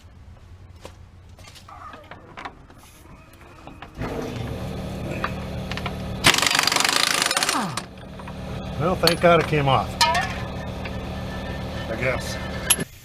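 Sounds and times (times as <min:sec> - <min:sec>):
impact wrench spinning and hammering: 0:05.2 - 0:13.0.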